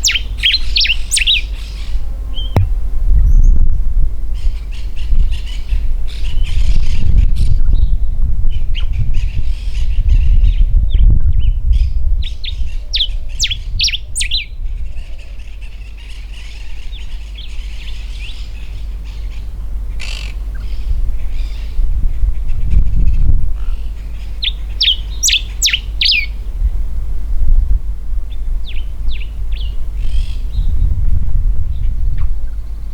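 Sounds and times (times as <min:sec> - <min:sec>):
finch singing whistled notes: 0:00.0 - 0:02.6, 0:04.8 - 0:14.6, 0:24.2 - 0:26.4
steady low rumble: 0:00.0 - 0:32.9.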